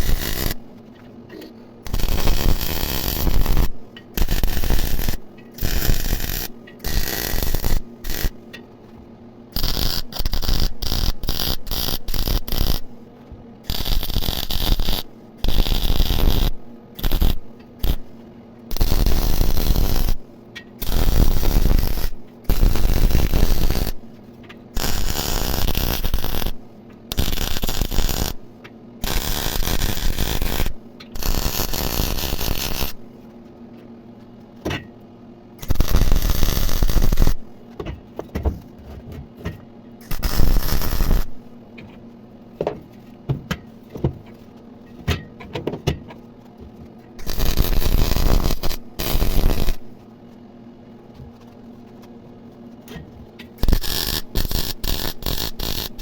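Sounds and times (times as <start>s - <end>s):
welding arc crackle: 0.0s - 0.6s, 1.8s - 8.4s, 9.6s - 12.9s, 13.7s - 18.1s, 18.7s - 20.2s, 20.8s - 24.1s, 24.8s - 33.0s, 35.6s - 37.4s, 40.0s - 41.4s, 47.2s - 50.0s, 53.6s - 56.0s.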